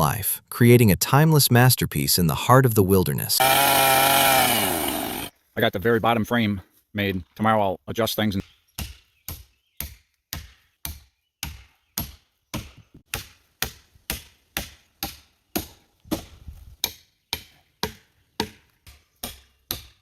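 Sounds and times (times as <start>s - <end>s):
hand tool chopping wood: 3.4s - 5.3s, 8.8s - 20.0s.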